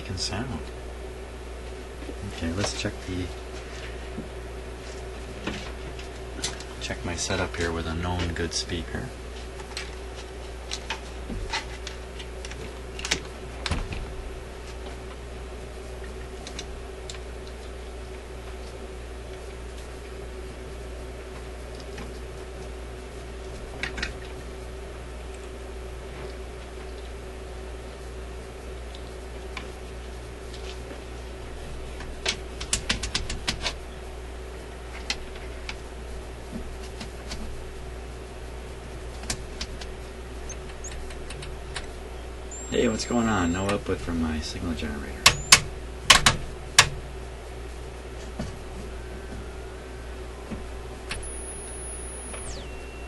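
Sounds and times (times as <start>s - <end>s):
steady low hum: 0.0s - 53.0s
test leads and clips clicking: 45.2s - 46.9s, 51.1s - 53.0s.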